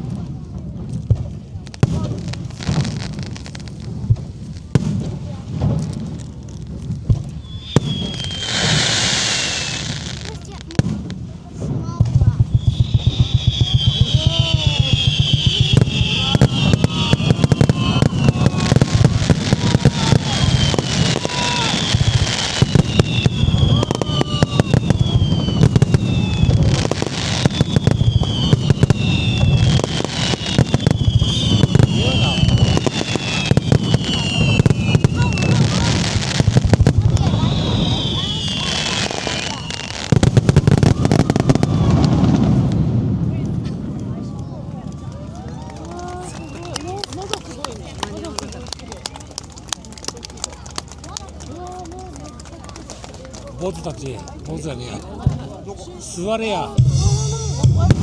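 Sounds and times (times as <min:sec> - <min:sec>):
loud hissing crackle: 0:00.0 - 0:54.4
firework shells bursting: 0:00.8 - 0:43.2
whistle falling in pitch: 0:07.4 - 0:09.8, 0:12.5 - 0:18.8, 0:22.6 - 0:35.7, 0:37.2 - 0:42.0.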